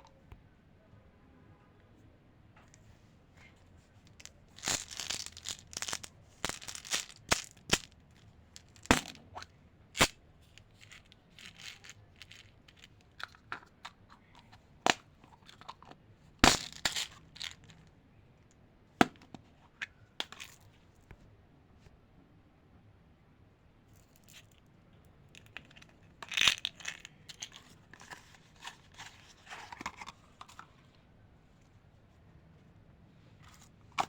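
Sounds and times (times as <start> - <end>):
plastic wrappers crinkling and tearing: 4.1 - 8.0.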